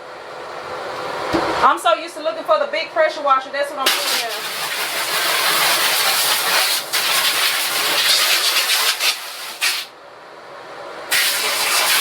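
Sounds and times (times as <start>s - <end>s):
water spray hissing: 3.9s - 9.9s, 11.1s - 12.0s.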